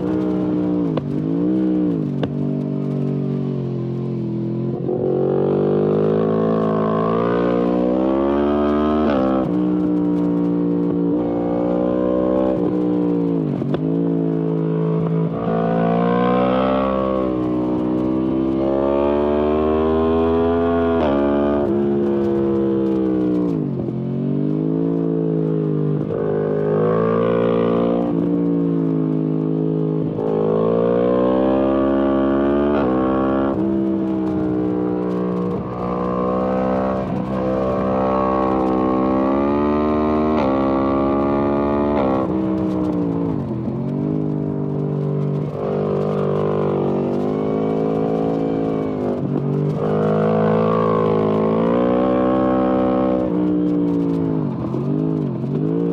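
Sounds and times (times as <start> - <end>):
motorcycle engine revving: 0.0 - 55.9.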